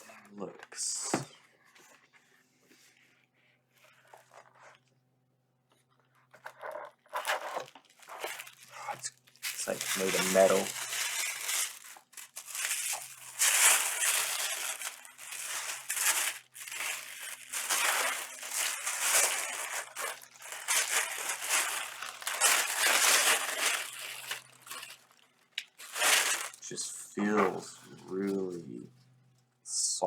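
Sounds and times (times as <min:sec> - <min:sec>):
packaging crinkling and rustling: 0:03.8 - 0:04.9, 0:05.7 - 0:28.5.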